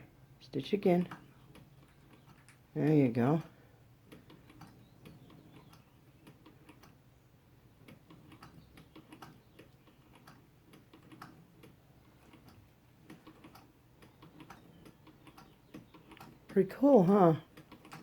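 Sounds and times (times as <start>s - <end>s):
sewing machine ticking: 7.8s - 18.0s.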